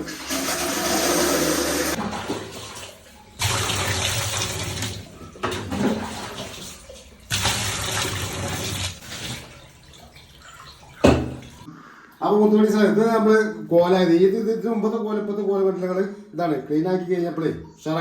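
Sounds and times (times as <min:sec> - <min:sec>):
water jet spraying: 0:00.0 - 0:02.0.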